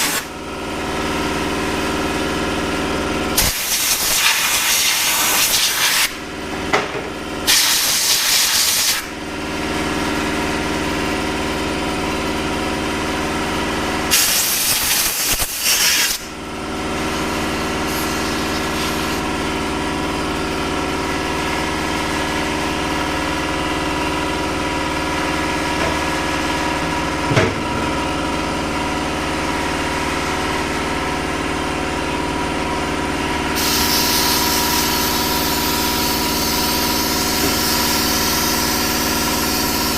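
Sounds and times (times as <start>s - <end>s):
compressed air hissing blasts: 0.0s - 0.3s, 3.4s - 6.2s, 7.5s - 9.1s, 14.1s - 16.3s, 17.8s - 19.2s, 33.6s - 39.9s
steady machine hum: 9.1s - 39.9s.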